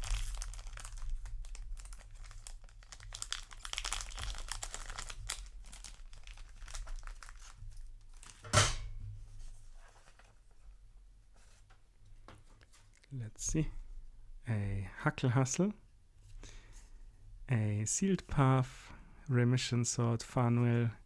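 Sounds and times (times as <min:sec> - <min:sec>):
foil pack crinkling and tearing: 0:00.0 - 0:08.5
foil rustling: 0:00.0 - 0:08.5.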